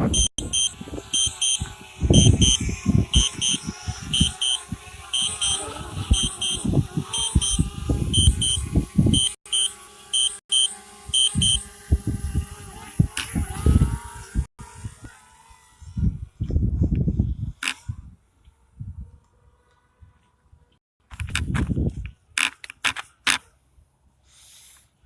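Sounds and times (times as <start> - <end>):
wind buffeting microphone: 0.0 - 9.4, 11.0 - 15.1, 15.8 - 19.2, 21.2 - 22.2
electronic warning beeper: 0.0 - 11.7.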